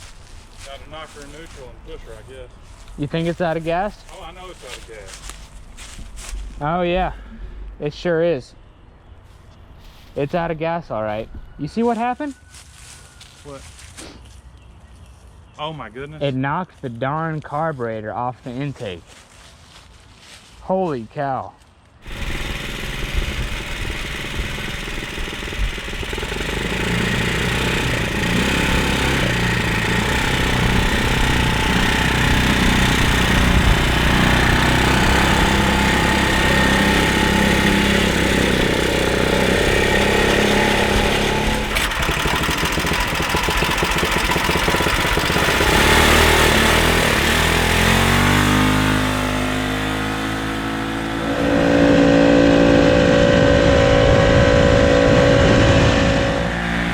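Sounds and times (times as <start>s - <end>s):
engine running under load: 22.0s - 56.9s.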